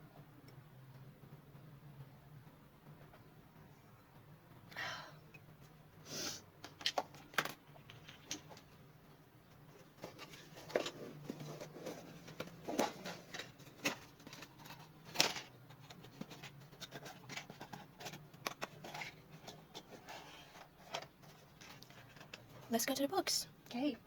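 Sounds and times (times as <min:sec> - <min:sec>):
objects handled by hand: 0:05.3 - 0:24.0.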